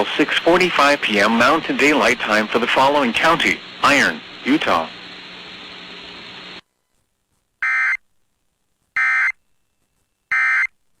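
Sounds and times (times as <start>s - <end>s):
steady hiss: 0.0s - 7.5s
buzzy digital data bursts: 0.3s - 6.6s.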